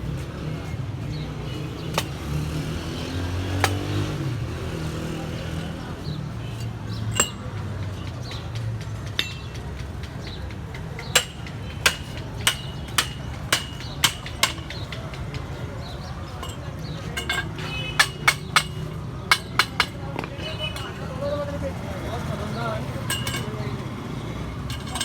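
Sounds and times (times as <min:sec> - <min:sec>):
hammer striking iron pipe: 0:07.2 - 0:07.5, 0:11.2 - 0:14.9, 0:17.2 - 0:20.3.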